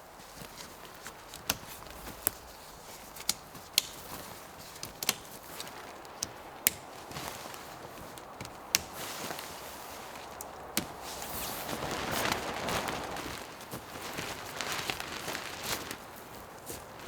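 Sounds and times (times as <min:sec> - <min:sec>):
sharp clicks and snaps: 0:01.2 - 0:07.0.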